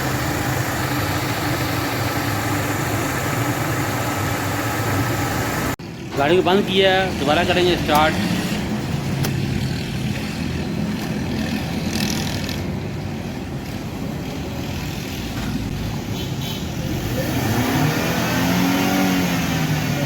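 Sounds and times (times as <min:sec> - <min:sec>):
car engine running: 0:00.0 - 0:11.3.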